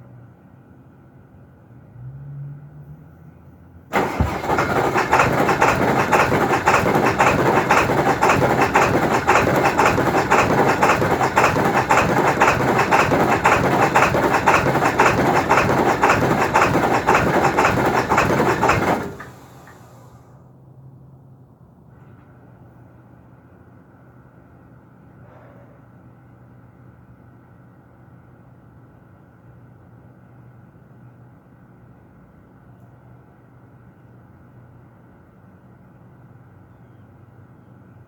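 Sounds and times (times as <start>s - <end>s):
diesel engine cranking: 3.9s - 20.2s.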